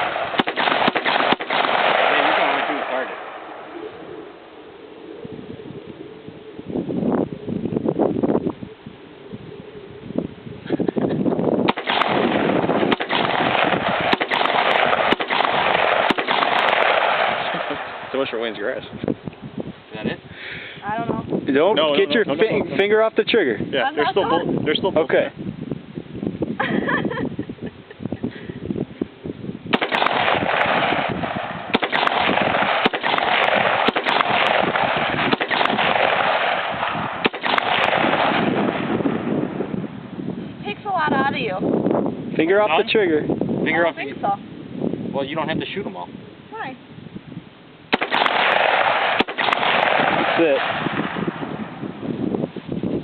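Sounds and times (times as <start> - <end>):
rifle shots: 0.0 - 3.7, 11.7 - 18.3, 29.7 - 39.3, 47.9 - 51.6.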